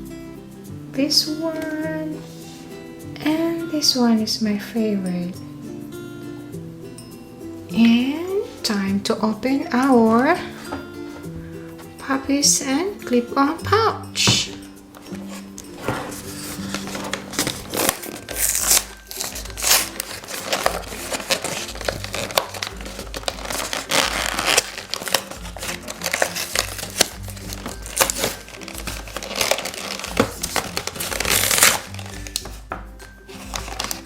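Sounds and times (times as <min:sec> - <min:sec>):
cheerful background music: 0:00.0 - 0:34.0
plastic packaging crinkling and tearing: 0:15.0 - 0:32.6, 0:33.3 - 0:34.0.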